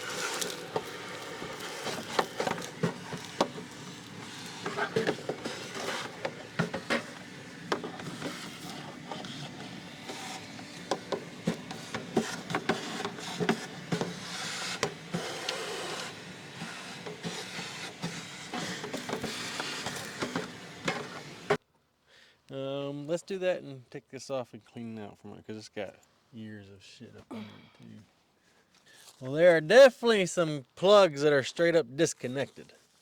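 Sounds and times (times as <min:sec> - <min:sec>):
nozzle knocking surfaces: 0:00.0 - 0:21.6
small vacuum running: 0:00.0 - 0:21.6.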